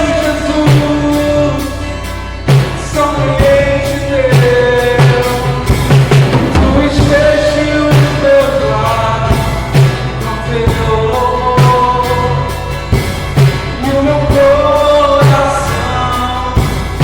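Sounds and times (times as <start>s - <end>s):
acoustic guitar: 0.0s - 17.0s
cymbals: 0.2s - 17.0s
drum kit beat: 0.2s - 17.0s
person singing long notes: 3.0s - 12.4s.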